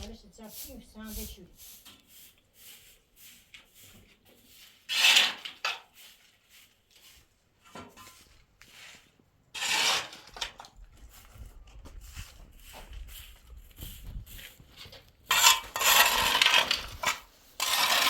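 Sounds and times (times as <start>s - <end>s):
dishes scraping: 15.3s - 18.0s.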